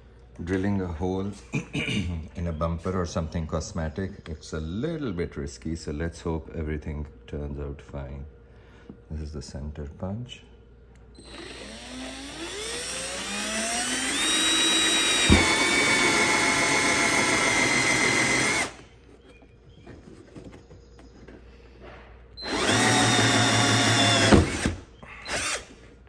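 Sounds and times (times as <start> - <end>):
power drill whining: 11.2 - 18.8, 22.4 - 25.8.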